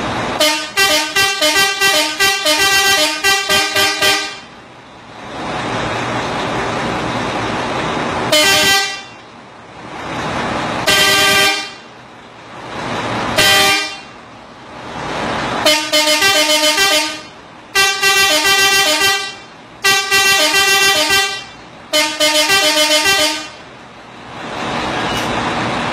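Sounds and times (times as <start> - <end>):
steady rushing noise: 0.0 - 0.8, 3.5 - 15.7, 23.2 - 25.9
truck air horn blasts: 0.3 - 4.5, 8.3 - 9.2, 10.8 - 11.9, 13.4 - 14.1, 15.6 - 23.6.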